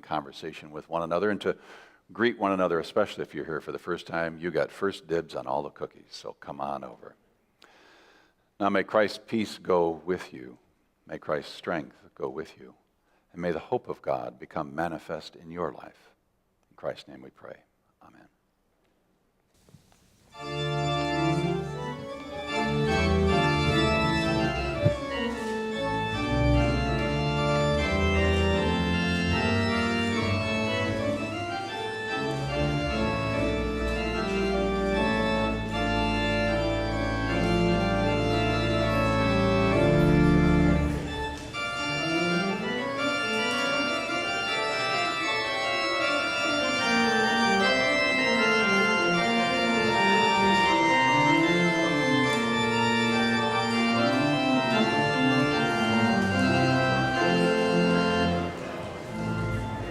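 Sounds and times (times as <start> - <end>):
organ music: 20.3 - 59.9.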